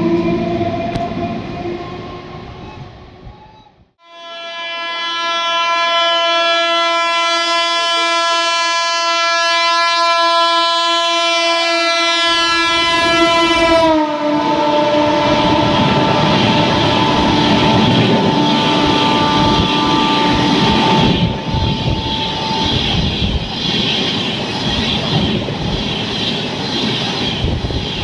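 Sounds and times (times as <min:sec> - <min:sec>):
rumbling train noise: 0:00.0 - 0:04.0, 0:06.9 - 0:28.0
locomotive horn blast: 0:04.0 - 0:23.0.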